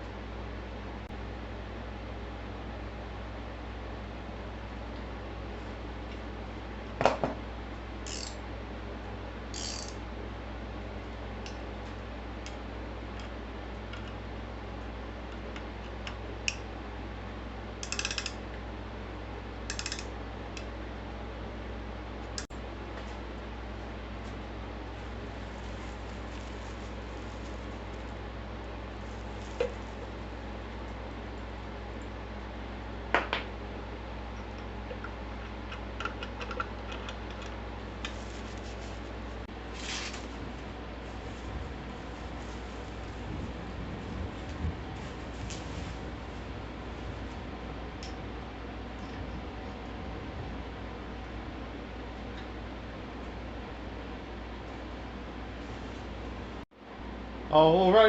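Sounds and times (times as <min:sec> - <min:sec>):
steady low hum: 0:00.0 - 0:58.0
rapid ratcheting clicks: 0:08.1 - 0:08.4, 0:17.8 - 0:18.4, 0:19.7 - 0:20.1
short rustle: 0:25.0 - 0:28.2, 0:38.1 - 0:47.4.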